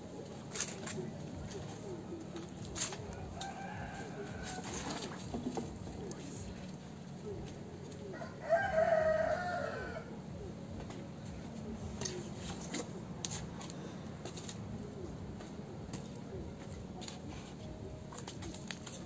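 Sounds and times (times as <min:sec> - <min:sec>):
rooster crowing: 0:03.1 - 0:05.1, 0:08.1 - 0:10.2.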